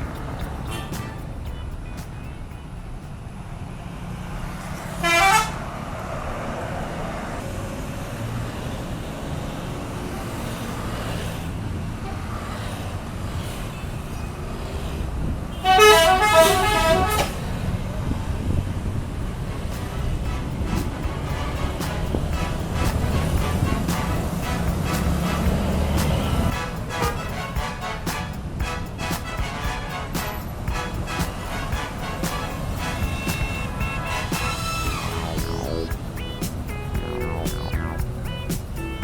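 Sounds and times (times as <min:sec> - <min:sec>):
musical air horn: 0:00.0 - 0:01.7, 0:05.0 - 0:05.6, 0:15.6 - 0:17.5, 0:19.5 - 0:39.0
bus engines and traffic rumble: 0:00.0 - 0:39.0.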